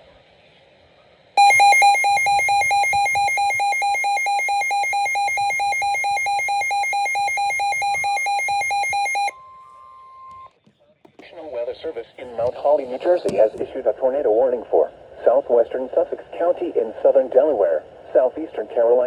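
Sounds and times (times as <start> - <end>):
rapidly pulsing electronic beep: 1.4 - 9.3.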